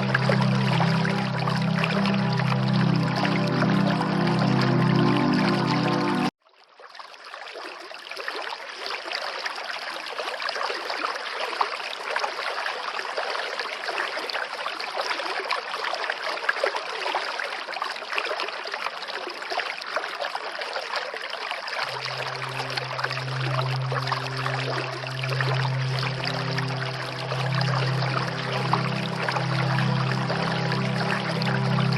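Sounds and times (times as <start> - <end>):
low musical drone: 0.0 - 6.3, 21.8 - 31.9
rushing water: 0.0 - 31.9.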